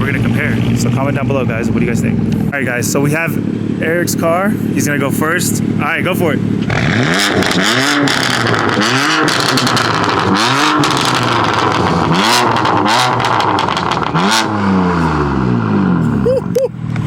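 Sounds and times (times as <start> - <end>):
car engine revving: 0.0 - 17.0
exhaust crackles and pops: 6.6 - 14.5.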